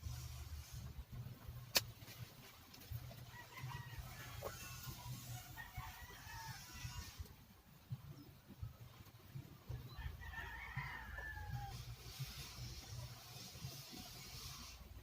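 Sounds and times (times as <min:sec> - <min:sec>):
rooster crowing: 0:03.3 - 0:07.2, 0:09.9 - 0:11.9.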